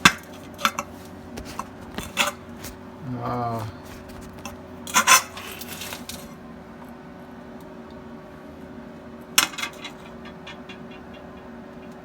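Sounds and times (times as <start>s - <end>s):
steady low hum: 0.0s - 6.7s.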